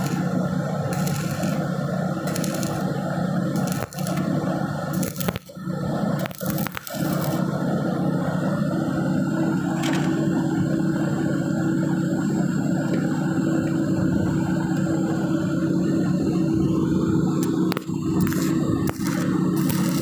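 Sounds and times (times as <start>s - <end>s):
welding arc crackling sizzle: 0.0s - 7.7s, 16.5s - 20.0s
low even hum: 0.0s - 20.0s.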